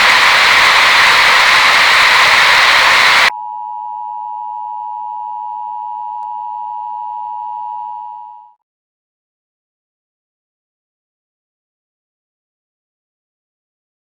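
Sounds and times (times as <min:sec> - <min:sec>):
loud static hiss: 0:00.0 - 0:03.3.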